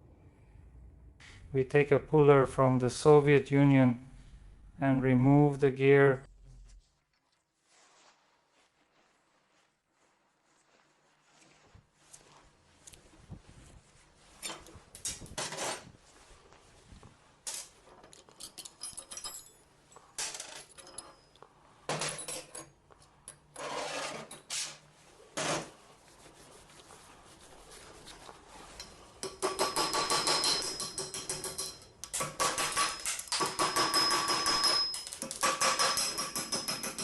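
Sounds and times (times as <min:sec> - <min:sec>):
metal tools clinking and clanking: 0:17.5 - 0:22.8, 0:28.7 - 0:37.0.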